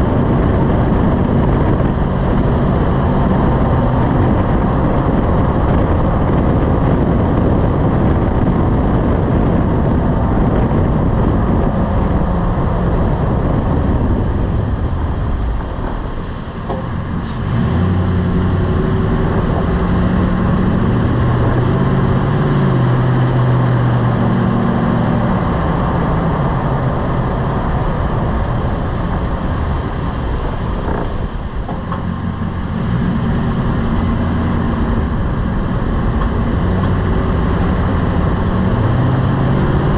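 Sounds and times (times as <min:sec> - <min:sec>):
low drivetrain hum: 0:00.0 - 0:39.9
truck driving rumble: 0:00.0 - 0:39.9.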